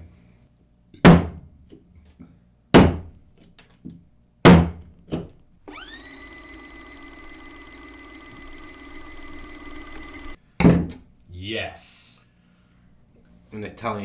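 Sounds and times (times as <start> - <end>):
steady droning tone: 5.7 - 10.4.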